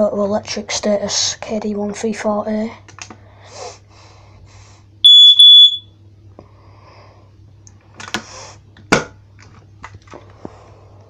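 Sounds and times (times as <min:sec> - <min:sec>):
smoke alarm blasts: 0:05.0 - 0:05.9.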